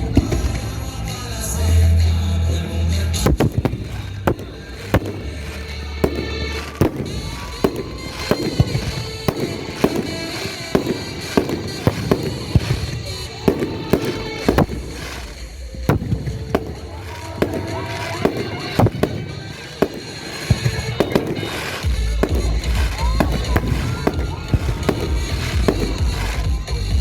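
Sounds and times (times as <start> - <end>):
music with heavy bass: 0.0 - 8.4, 21.9 - 27.0
fireworks bangs and crackles: 0.0 - 27.0.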